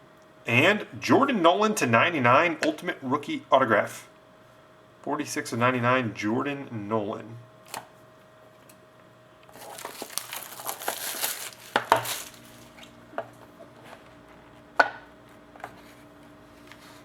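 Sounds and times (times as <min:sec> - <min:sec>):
wrapper crinkling: 0:09.5 - 0:13.0.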